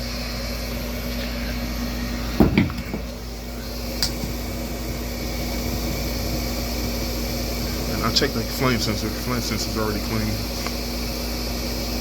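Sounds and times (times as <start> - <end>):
gas furnace humming: 0.0 - 12.0
double clunk: 2.4 - 3.2.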